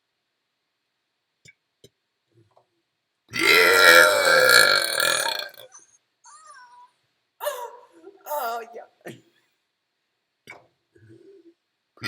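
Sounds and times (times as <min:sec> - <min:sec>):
person burping: 0:03.4 - 0:05.7.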